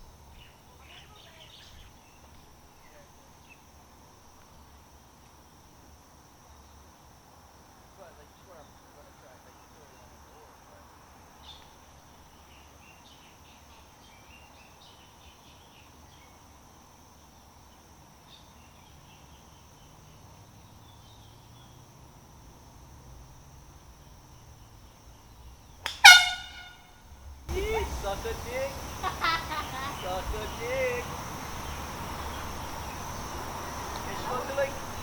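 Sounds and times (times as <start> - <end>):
low steady background hum: 0.0 - 35.0
handheld air horn blast: 25.8 - 27.0.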